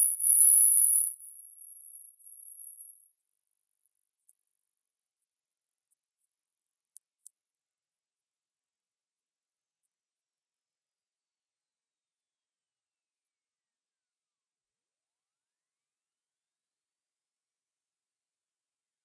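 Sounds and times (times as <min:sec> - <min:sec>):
high-pitched pulsing test tone: 0:00.0 - 0:15.2.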